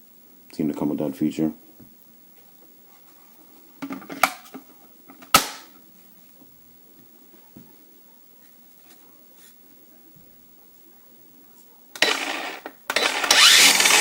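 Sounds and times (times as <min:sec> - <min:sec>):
sharp loud plastic click: 0:05.3 - 0:05.7.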